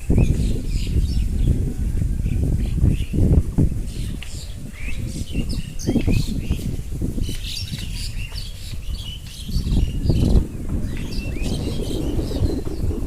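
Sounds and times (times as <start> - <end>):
birds chirping: 0.0 - 13.0
low rumble on microphone: 0.0 - 13.0.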